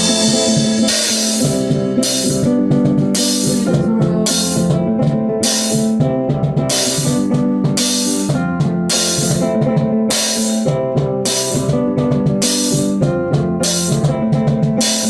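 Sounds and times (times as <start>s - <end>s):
cymbal crashes: 0.0s - 2.5s
drum kit: 0.0s - 15.0s
guitar chords: 0.0s - 15.0s.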